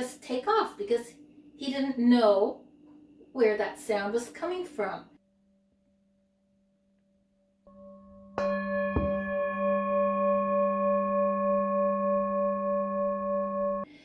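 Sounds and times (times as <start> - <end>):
singing bowl ringing: 5.2 - 13.9
short knock: 9.0 - 9.3.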